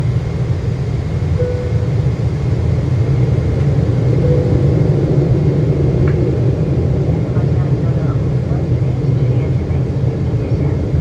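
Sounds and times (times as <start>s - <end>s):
jet engines rumbling: 0.0s - 11.0s
faint short whine: 1.4s - 2.2s.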